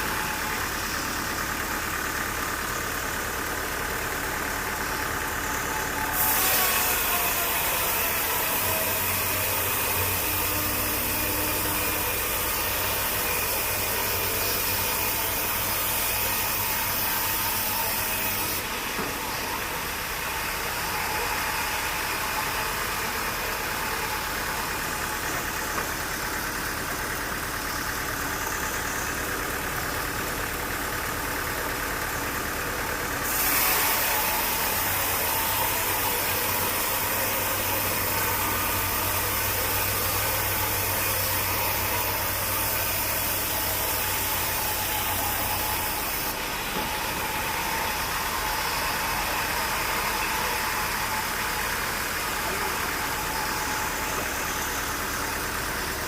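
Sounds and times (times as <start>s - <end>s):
sawmill machinery engine running: 0.0s - 56.0s
loud hissing noise: 33.2s - 56.0s.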